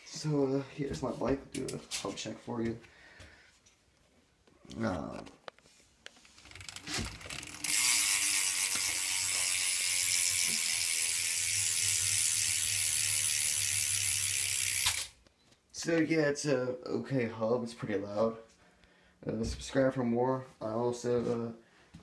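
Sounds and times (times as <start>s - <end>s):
bike hub buzzing clicks: 6.6s - 15.2s.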